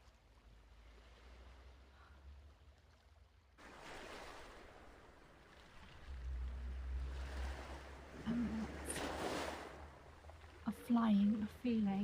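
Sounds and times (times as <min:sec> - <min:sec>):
ocean waves: 0:00.1 - 0:12.0
surf washing in: 0:03.6 - 0:10.5.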